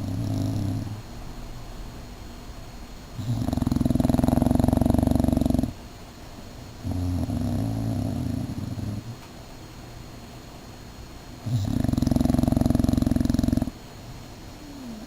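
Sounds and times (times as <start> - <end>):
dog snoring: 0.0 - 1.0, 3.2 - 5.8, 6.8 - 9.2, 11.4 - 13.8, 14.6 - 15.0.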